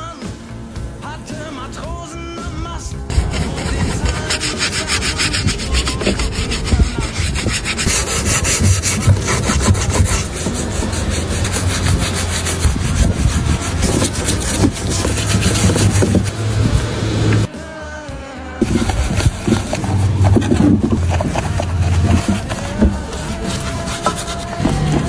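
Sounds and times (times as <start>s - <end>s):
low hum: 2.6s - 17.5s
rubbing strokes on hard surface: 3.1s - 17.5s, 18.6s - 25.0s.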